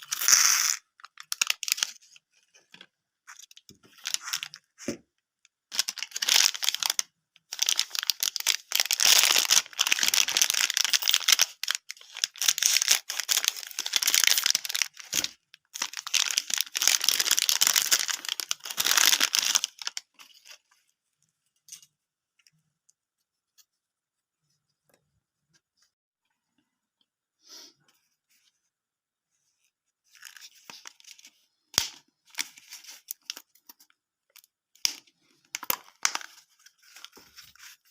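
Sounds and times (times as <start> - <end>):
snack wrapper crinkling: 5.7 - 20.1.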